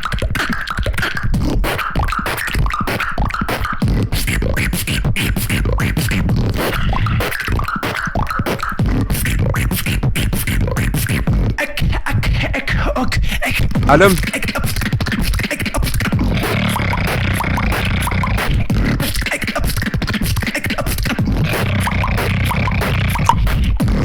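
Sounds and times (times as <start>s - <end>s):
person beatboxing: 0.0s - 24.0s
sliding pitched vocal effects: 13.9s - 14.2s.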